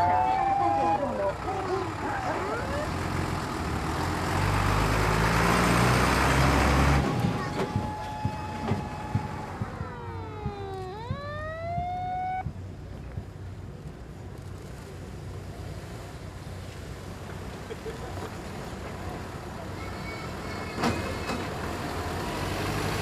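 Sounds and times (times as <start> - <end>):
emergency vehicle siren: 0.0 - 1.4, 6.6 - 12.5
heavy vehicle passing: 0.0 - 12.5, 18.3 - 23.0.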